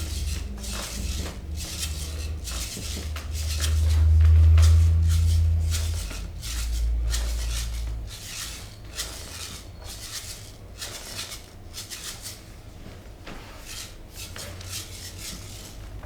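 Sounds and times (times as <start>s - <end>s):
low hum: 0.0s - 8.1s.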